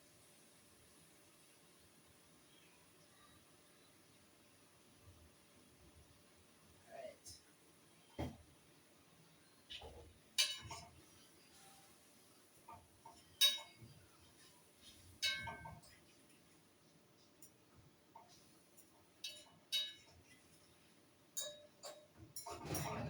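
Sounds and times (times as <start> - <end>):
spoon and lid clinking on pot: 10.4 - 10.9, 13.1 - 13.8, 15.2 - 16.0, 19.2 - 20.1, 21.4 - 23.0.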